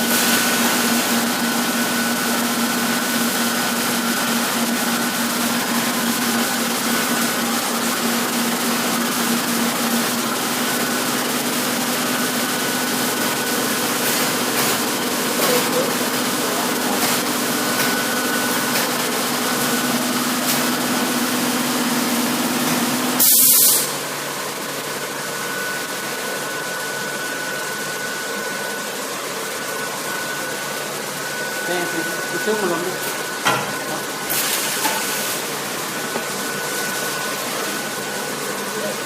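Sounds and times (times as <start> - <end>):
welding machine humming: 0.0 - 39.0
workshop noise: 0.0 - 39.0.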